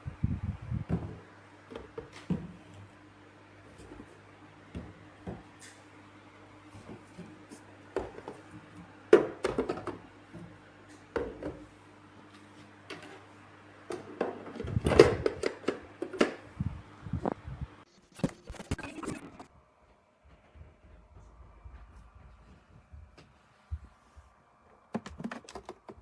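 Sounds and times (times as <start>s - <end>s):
low steady hum: 0.0s - 1.2s
objects knocking and clattering: 9.1s - 10.0s, 24.9s - 26.0s.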